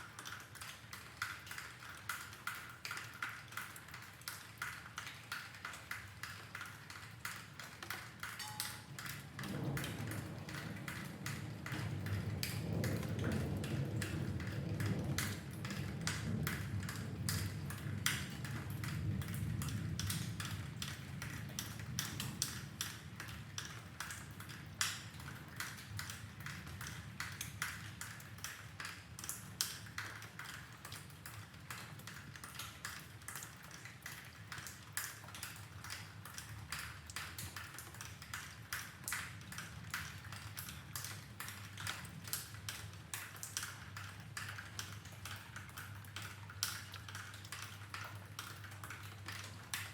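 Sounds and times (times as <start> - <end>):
rain dripping: 0.0 - 49.9
distant thunder: 8.8 - 22.5.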